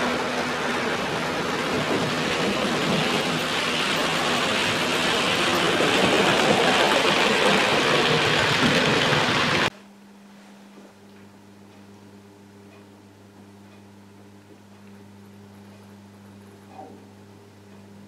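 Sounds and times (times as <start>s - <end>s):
model train wheels rumbling: 0.0s - 9.7s.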